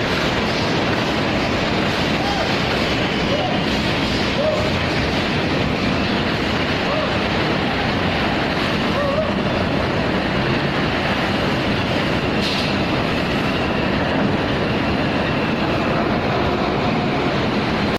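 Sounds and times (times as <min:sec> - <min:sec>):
short hiss: 0:12.4 - 0:12.8.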